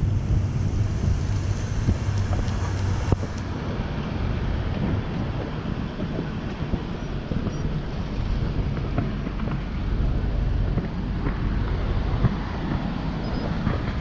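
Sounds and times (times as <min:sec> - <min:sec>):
road traffic passing cars: 0:00.0 - 0:14.0
wind rumble on microphone: 0:00.0 - 0:14.0.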